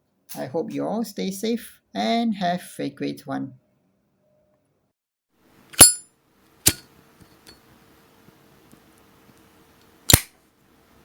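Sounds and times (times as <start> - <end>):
lighter lid clinking: 5.8 - 6.0.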